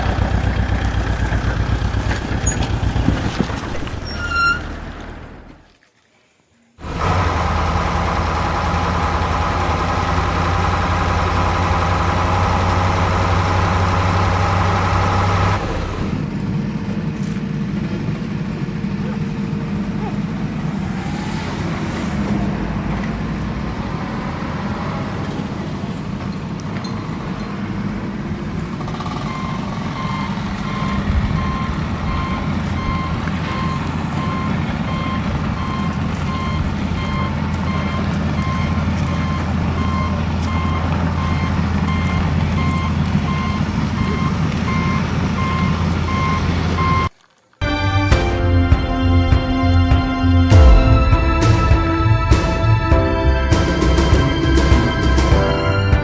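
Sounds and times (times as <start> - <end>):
construction vehicle engine: 0.0 - 5.7, 6.8 - 56.0
reversing alarm beeping: 28.8 - 47.1.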